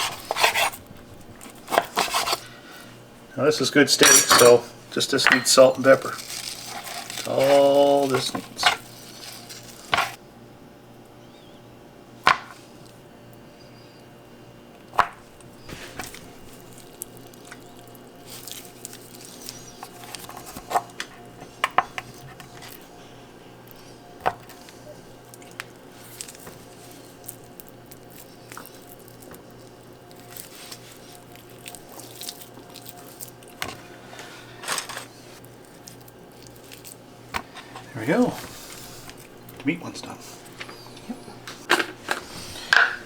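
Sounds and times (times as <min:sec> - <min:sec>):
raw meat squishing: 0:05.0 - 0:10.2, 0:14.8 - 0:34.5, 0:35.1 - 0:41.7.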